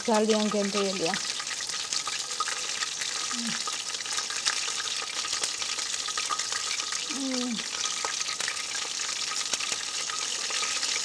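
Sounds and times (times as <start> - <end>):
wood fire crackling and hissing: 0.0 - 11.0
low voice murmur: 3.3 - 3.6, 7.1 - 7.7.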